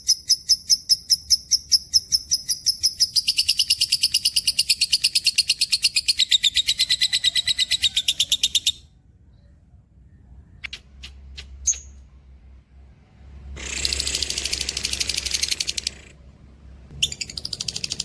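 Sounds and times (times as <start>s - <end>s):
bird rapid high chirps: 0.0s - 8.9s, 10.6s - 12.1s, 16.9s - 18.0s.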